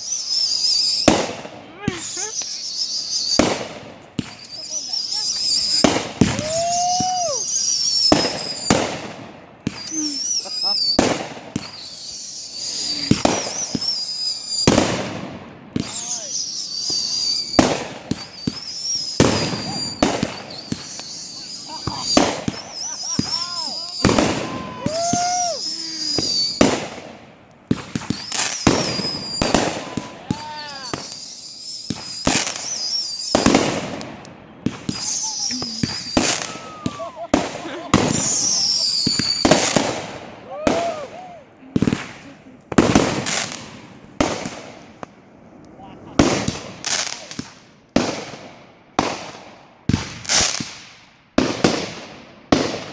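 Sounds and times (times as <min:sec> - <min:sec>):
high wavering whistle: 0:00.0 - 0:01.1, 0:01.9 - 0:03.6, 0:04.2 - 0:08.8, 0:09.7 - 0:11.0, 0:11.6 - 0:14.8, 0:15.9 - 0:26.7, 0:28.1 - 0:33.6, 0:34.8 - 0:37.3, 0:38.0 - 0:39.8
fireworks banging: 0:00.0 - 0:52.9.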